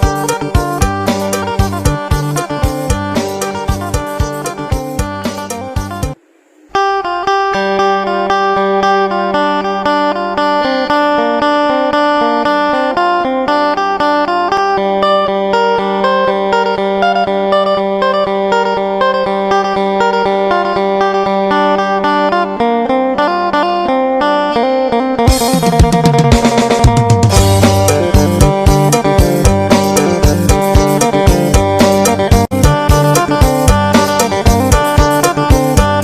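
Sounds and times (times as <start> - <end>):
plucked lute melody: 0.0 - 6.2, 6.8 - 36.0
drums and percussion: 0.0 - 6.9, 25.3 - 36.0.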